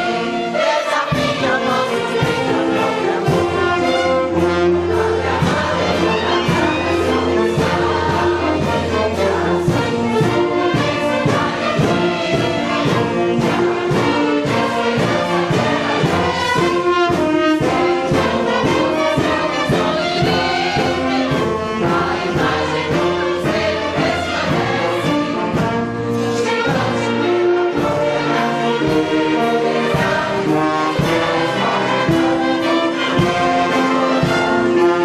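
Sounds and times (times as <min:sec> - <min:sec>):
orchestra playing an anthem: 0:00.0 - 0:35.0.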